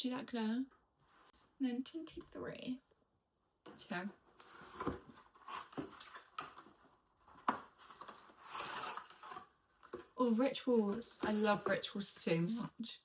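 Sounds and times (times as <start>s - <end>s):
packaging taps and scrapes: 3.8s - 12.0s
tearing rustle: 7.7s - 9.5s.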